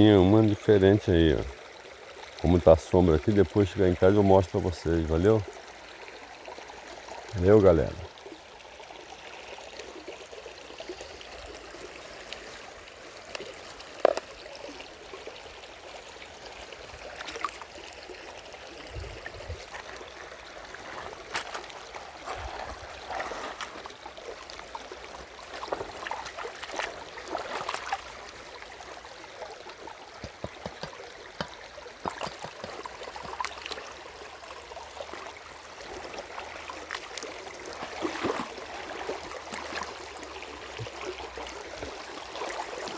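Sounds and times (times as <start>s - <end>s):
small splashes and clicks: 12.1s - 14.8s, 17.0s - 17.9s, 19.6s - 29.0s, 29.6s - 34.0s, 36.5s - 40.1s.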